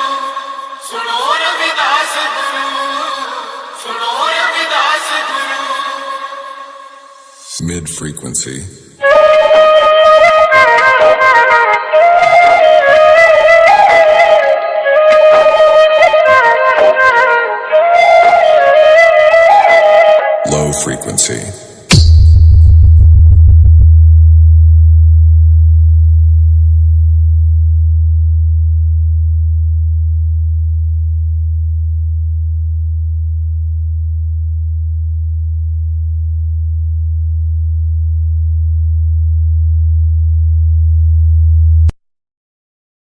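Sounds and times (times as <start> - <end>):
deep bass sine tone: 21.9 - 41.9.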